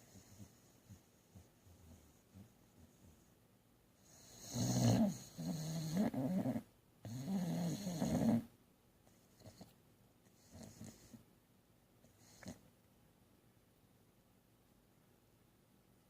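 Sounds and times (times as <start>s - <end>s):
dog snoring: 0.0s - 3.2s, 4.0s - 8.5s, 9.3s - 9.7s, 10.4s - 11.2s, 12.0s - 12.7s.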